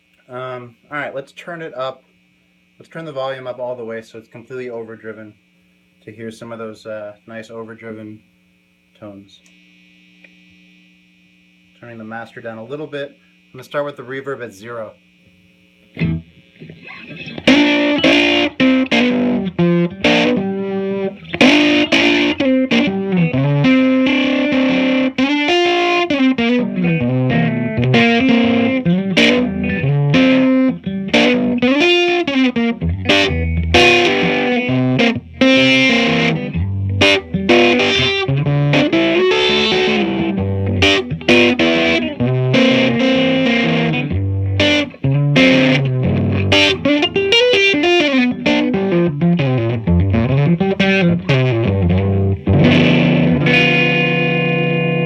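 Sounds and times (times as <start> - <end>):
overdriven electric guitar: 15.8 - 55.0.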